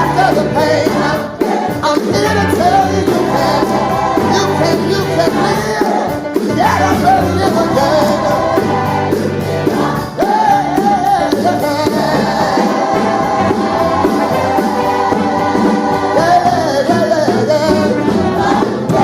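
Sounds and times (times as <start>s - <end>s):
band playing: 0.0s - 19.0s
gospel choir singing: 0.0s - 19.0s.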